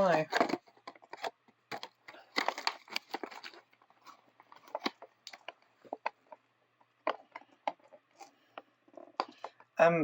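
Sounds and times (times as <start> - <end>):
packaging crinkling: 0.0 - 6.4.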